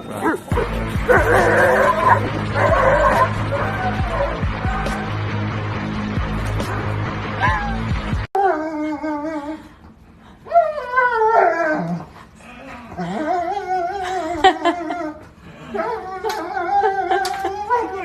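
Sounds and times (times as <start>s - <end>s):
dog whining howls: 1.1s - 5.2s, 10.5s - 18.0s.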